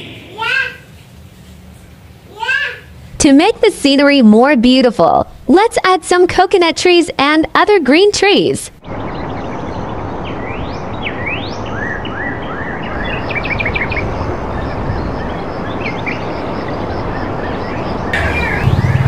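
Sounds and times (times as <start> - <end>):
birds chirping: 7.6 - 19.0.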